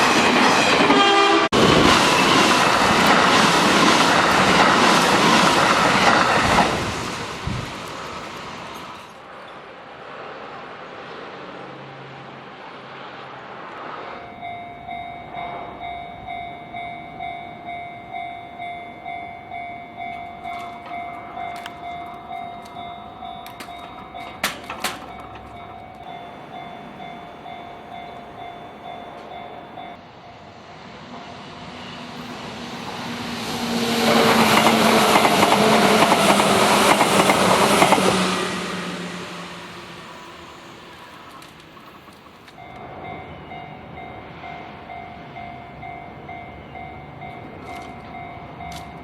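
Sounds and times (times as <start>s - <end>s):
train wheels rattling on rails: 0.0s - 12.1s, 13.2s - 49.0s
electric train passing: 0.0s - 49.0s
level crossing warning bell: 14.1s - 30.6s, 42.4s - 49.0s.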